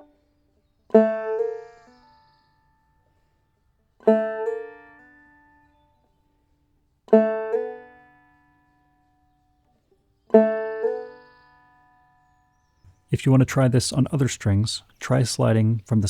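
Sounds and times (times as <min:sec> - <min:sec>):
banjo notes sliding in pitch: 0:00.9 - 0:02.5, 0:04.1 - 0:05.8, 0:07.1 - 0:08.1, 0:10.3 - 0:11.6.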